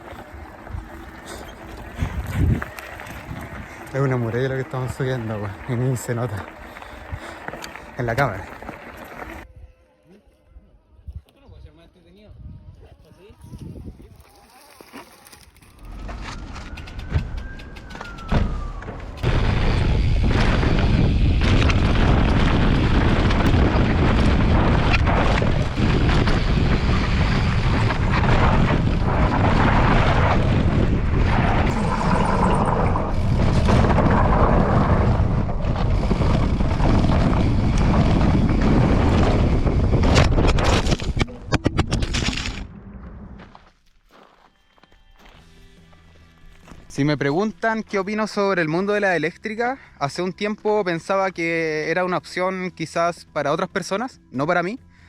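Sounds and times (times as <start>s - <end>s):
wind buffeting on microphone: 0.0s - 7.5s, 11.0s - 14.2s, 15.8s - 43.4s
bike rattling over rocky trail: 0.0s - 9.4s, 19.3s - 44.3s
rising and falling whine: 15.6s - 42.0s.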